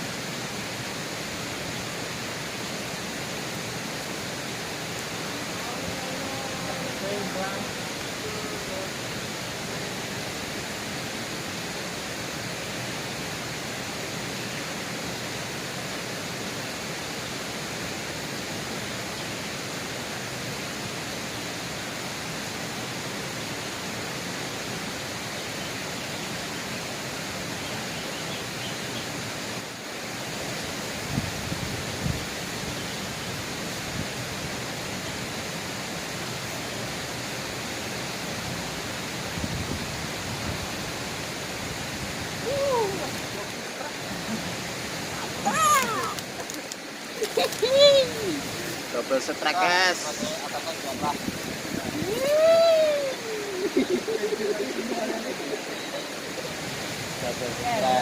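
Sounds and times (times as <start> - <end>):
river water rushing: 0.0 - 58.0.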